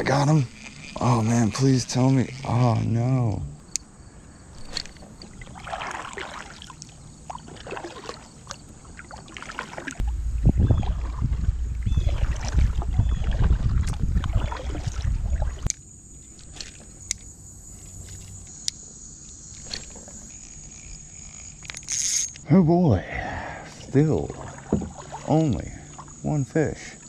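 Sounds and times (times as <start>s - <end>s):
paddle strokes splashing water: 5.0s - 15.7s, 23.8s - 26.4s
heavy low rumble on microphone: 10.0s - 15.6s.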